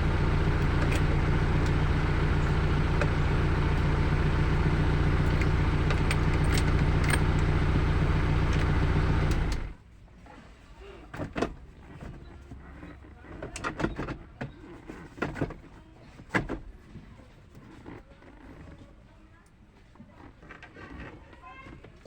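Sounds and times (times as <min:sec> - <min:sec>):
car engine idling: 0:00.0 - 0:09.8.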